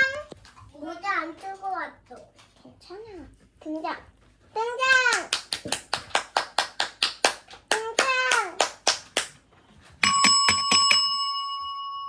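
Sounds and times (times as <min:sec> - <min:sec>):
hands clapping: 0:04.9 - 0:09.4
small bell ringing: 0:10.0 - 0:12.0.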